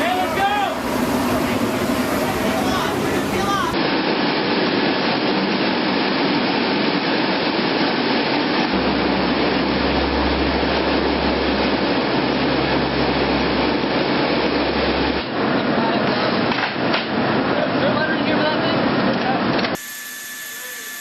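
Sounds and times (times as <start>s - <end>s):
jet engines running: 0.0s - 19.8s
low hum: 6.2s - 17.5s.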